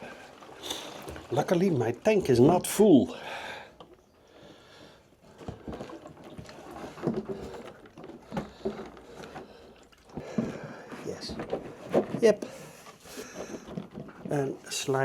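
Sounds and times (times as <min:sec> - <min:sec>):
dull knocks and scrapes: 0:05.3 - 0:15.0.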